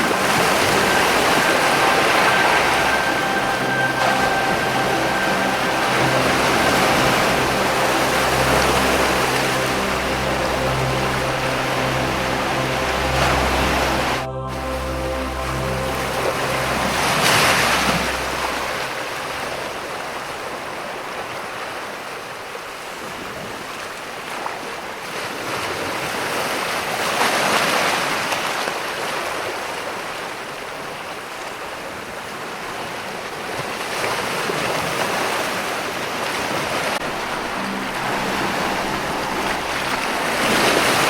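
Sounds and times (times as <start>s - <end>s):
low music tones: 0.0s - 21.2s, 36.9s - 41.0s.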